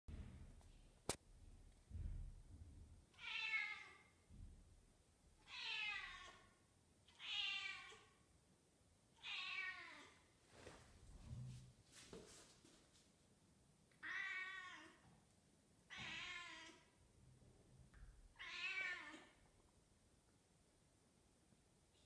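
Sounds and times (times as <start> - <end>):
cat meowing: 3.2 - 4.0, 5.5 - 6.4, 7.1 - 8.1, 9.2 - 10.2, 14.0 - 15.0, 15.9 - 16.9, 18.4 - 19.4.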